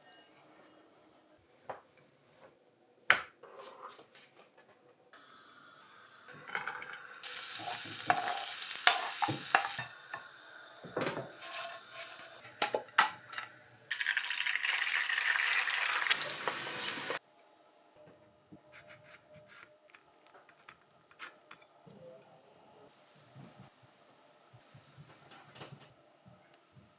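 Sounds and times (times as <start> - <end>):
utensils knocking against pan: 7.2 - 9.9
food sizzling in frying pan: 7.2 - 17.2.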